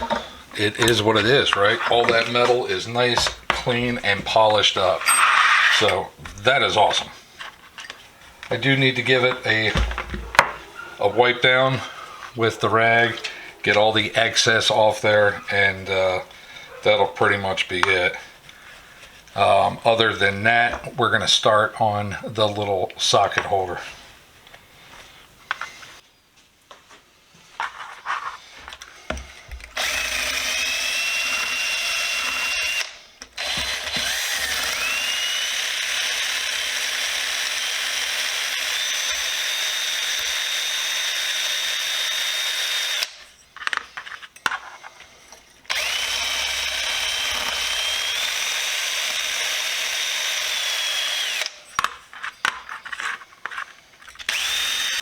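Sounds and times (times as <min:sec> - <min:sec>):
handling clicks and knocks: 0:00.0 - 0:06.5, 0:09.3 - 0:11.0
power tool whining: 0:00.0 - 0:14.5, 0:29.1 - 0:43.4, 0:45.7 - 0:52.8, 0:54.1 - 0:55.0.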